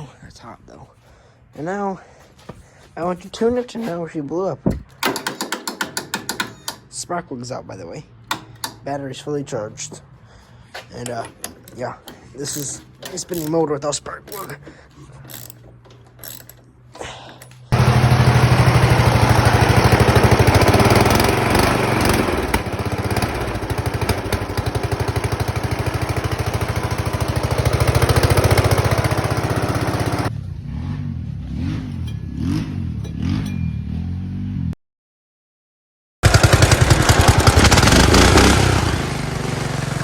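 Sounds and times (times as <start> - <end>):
engine cranking with clatter: 4.8 - 7.0, 8.2 - 30.3, 36.2 - 40.0.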